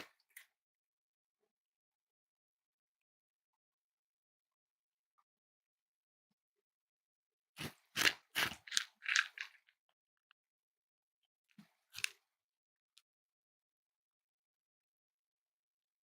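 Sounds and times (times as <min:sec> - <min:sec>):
cat crunching food: 0:07.6 - 0:09.7.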